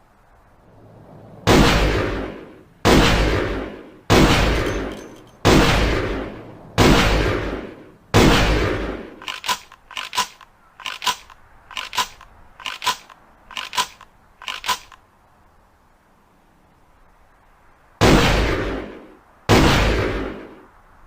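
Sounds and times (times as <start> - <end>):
shotgun shot: 1.5 - 10.4, 18.0 - 20.6
metallic double clicks: 4.5 - 5.5, 9.2 - 15.0.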